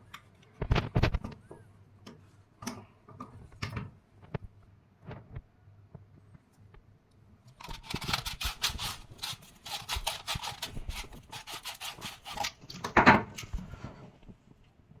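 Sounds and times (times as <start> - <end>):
scraping strokes on plastic pipe: 7.6 - 14.2.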